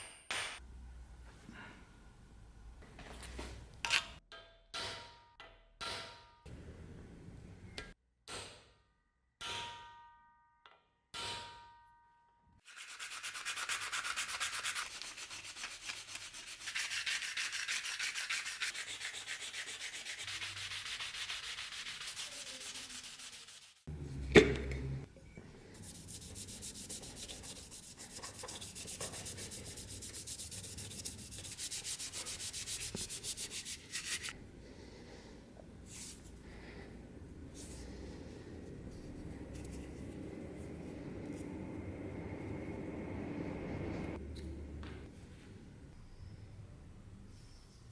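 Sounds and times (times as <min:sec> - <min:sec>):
hand sanding rasping strokes: 0:12.6 - 0:23.9, 0:25.6 - 0:34.4.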